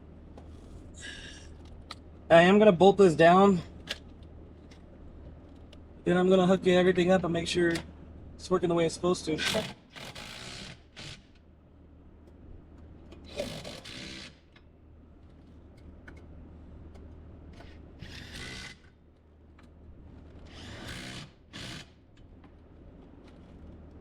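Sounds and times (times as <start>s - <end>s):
low steady hum: 0.0s - 24.0s
power tool bursts: 9.4s - 11.3s, 13.3s - 14.4s, 20.5s - 22.0s.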